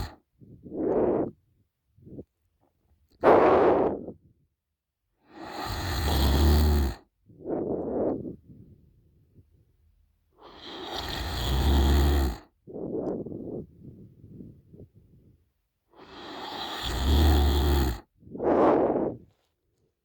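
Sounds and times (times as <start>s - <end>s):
woman snoring with deep rattle: 0.0s - 1.3s, 5.4s - 8.4s, 10.5s - 13.7s, 16.0s - 18.1s
soft breath: 0.0s - 2.3s, 3.2s - 4.3s, 5.2s - 9.8s, 10.4s - 19.6s.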